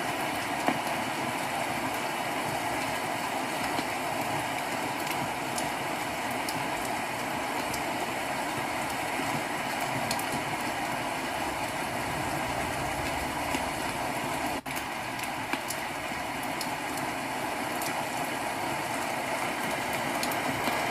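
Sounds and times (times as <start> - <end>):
rain hissing through a speaker: 0.0 - 20.9
raindrop ticks: 6.3 - 10.7, 11.6 - 18.3, 18.9 - 20.9.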